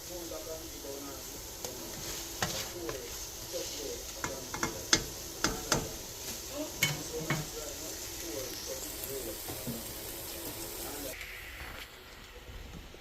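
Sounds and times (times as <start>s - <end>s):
food sizzling in a pot: 0.0s - 13.0s
utensil knocking against pot: 4.2s - 6.0s.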